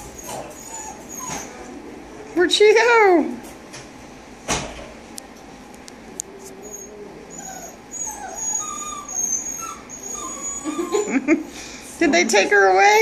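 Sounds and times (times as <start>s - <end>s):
puppies whimpering and whining: 0.0s - 1.8s, 6.4s - 11.5s, 12.7s - 13.0s
thump: 4.5s - 4.9s.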